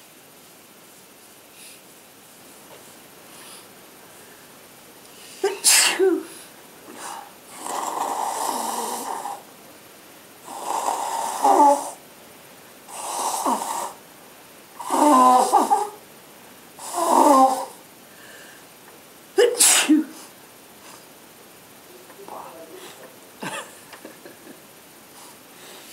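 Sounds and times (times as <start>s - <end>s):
person sneezing: 5.4s - 7.3s, 19.4s - 20.3s.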